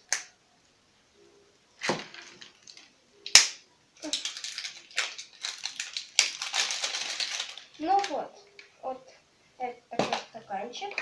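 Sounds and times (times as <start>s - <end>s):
wrapping crinkling and rustling: 1.8s - 2.9s, 4.0s - 8.7s
packaging snapping and clicking: 1.8s - 8.2s.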